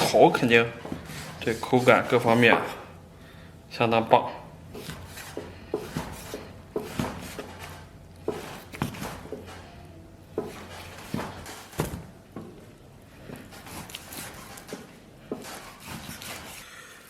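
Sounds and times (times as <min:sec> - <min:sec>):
kitchen knocks and clunks: 0:02.0 - 0:02.9, 0:04.8 - 0:09.7, 0:10.3 - 0:12.6.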